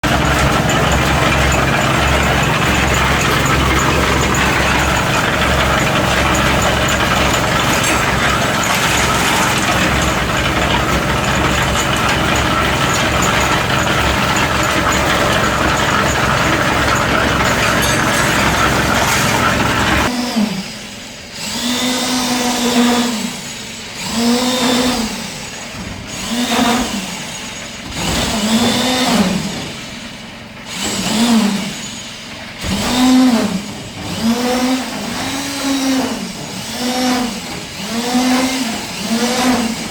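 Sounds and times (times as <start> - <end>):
diesel engine running: 0.0 - 20.1.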